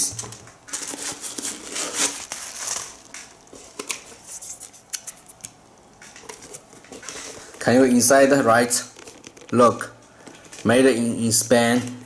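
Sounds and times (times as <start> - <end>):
hands rustling packaging: 0.3 - 11.0.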